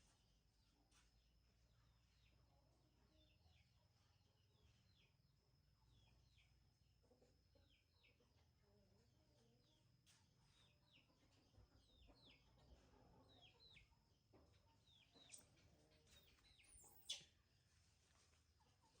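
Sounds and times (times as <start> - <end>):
faint bird chirps: 14.8 - 17.7.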